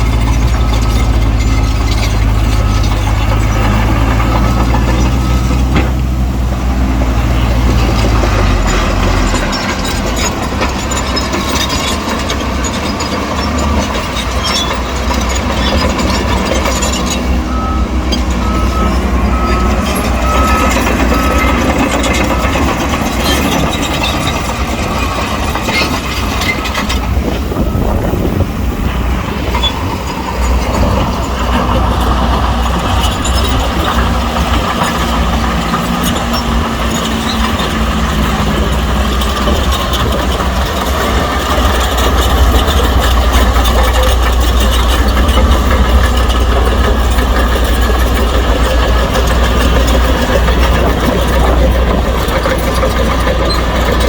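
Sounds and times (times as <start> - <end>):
heavy diesel machinery running: 0.0 - 54.0
reversing alarm beeps: 0.1 - 5.7, 15.7 - 24.5, 25.8 - 28.4.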